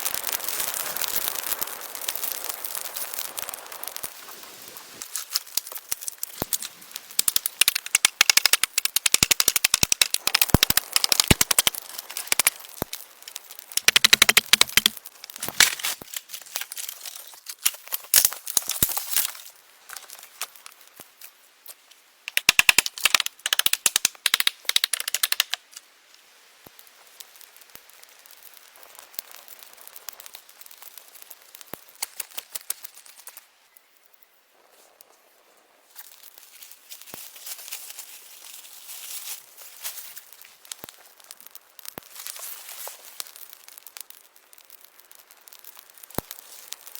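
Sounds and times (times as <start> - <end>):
dry wood crackling: 0.0 - 35.3, 35.9 - 46.9.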